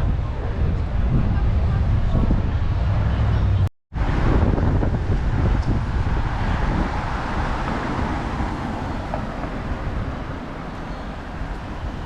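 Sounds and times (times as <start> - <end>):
moving vehicle rumble: 0.0 - 12.0.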